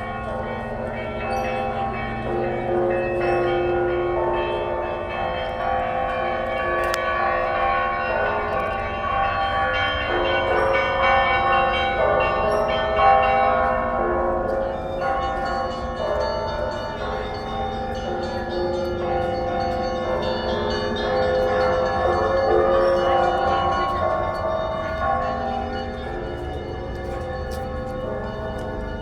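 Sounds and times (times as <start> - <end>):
church bells pealing: 0.0 - 29.0.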